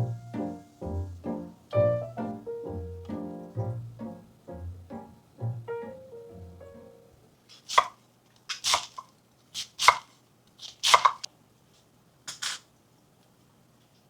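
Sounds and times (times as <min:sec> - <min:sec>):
background music: 0:00.0 - 0:07.1
knife chopping on cutting board: 0:10.8 - 0:11.2.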